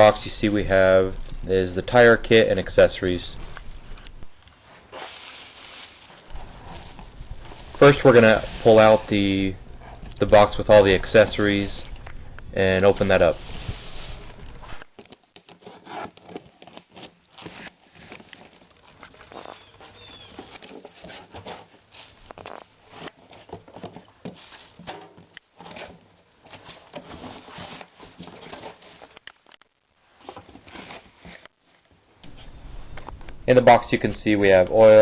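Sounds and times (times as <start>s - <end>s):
packing rustling and crinkling: 2.6s - 33.3s
cardboard box being opened: 20.0s - 29.2s.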